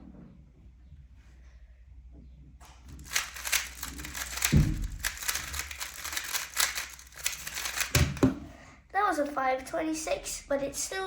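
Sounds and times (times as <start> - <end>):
puzzle cube plastic clicking: 3.0 - 8.4.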